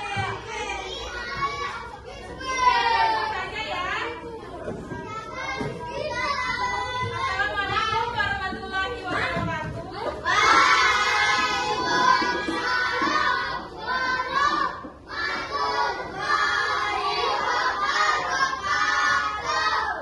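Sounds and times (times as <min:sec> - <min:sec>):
children singing: 0:00.0 - 0:03.6, 0:05.3 - 0:08.2, 0:10.2 - 0:20.0.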